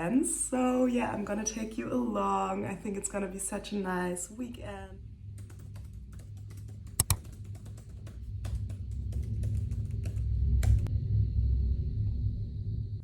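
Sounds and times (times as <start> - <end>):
computer keyboard typing: 5.4 - 10.9.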